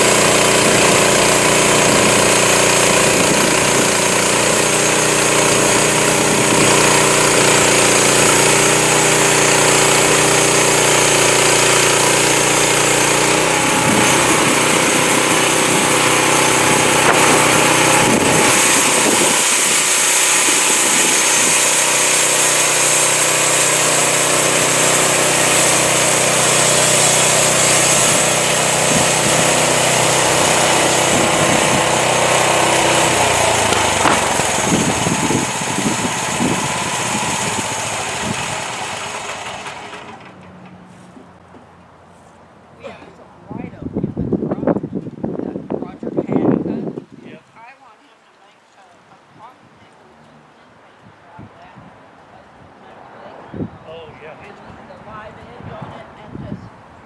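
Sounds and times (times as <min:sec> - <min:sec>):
band blade cutting log: 0:00.0 - 0:40.2
sawmill engine running: 0:00.0 - 0:41.6.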